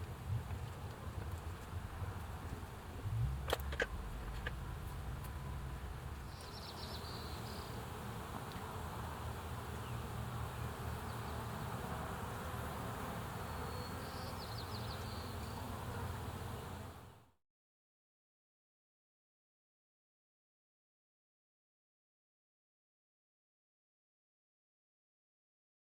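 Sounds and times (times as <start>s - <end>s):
honeybees buzzing: 0.0s - 17.2s.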